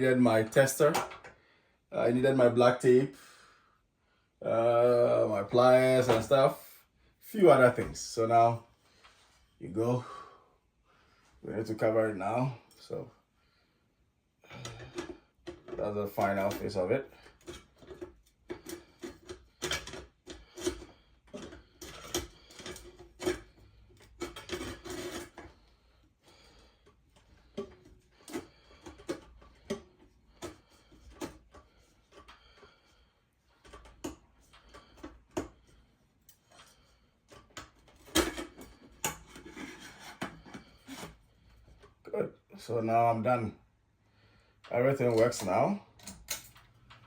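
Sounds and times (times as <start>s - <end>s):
clicks taps and scraping of plastic: 14.5s - 25.7s, 26.3s - 42.0s.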